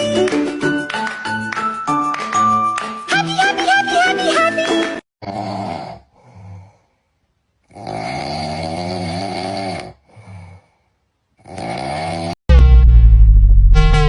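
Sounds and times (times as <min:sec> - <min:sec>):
loud music: 0:12.5 - 0:14.0.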